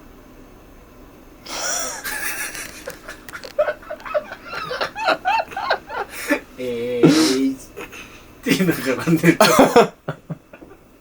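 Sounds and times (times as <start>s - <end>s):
person chuckling: 1.5s - 8.1s.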